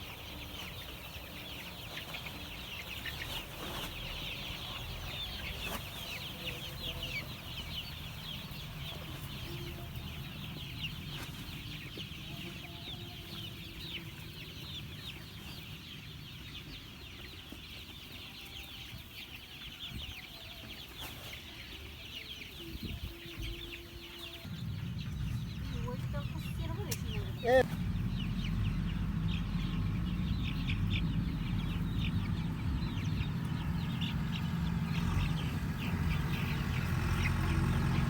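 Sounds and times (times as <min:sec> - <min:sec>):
chicks peeping: 0:00.0 - 0:38.0.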